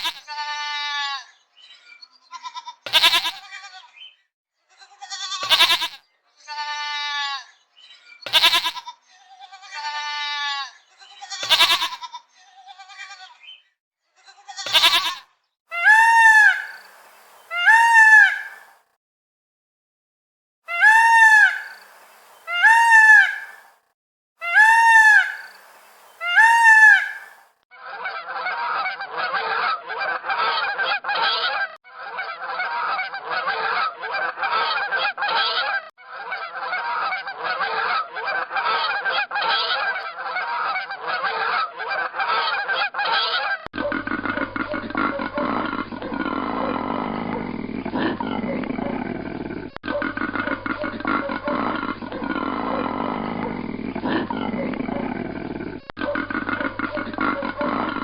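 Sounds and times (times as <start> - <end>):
geese honking: 20.7 - 21.8, 22.5 - 23.6.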